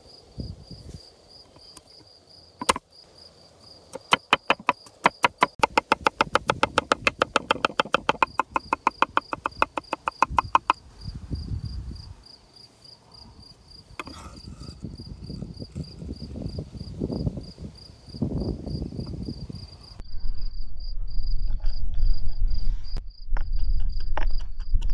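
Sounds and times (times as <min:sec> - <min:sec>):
crickets chirping: 0:00.0 - 0:20.0
handling and scraping sounds: 0:00.8 - 0:02.8, 0:12.7 - 0:16.9
knife chopping on cutting board: 0:04.0 - 0:10.8, 0:14.0 - 0:14.8.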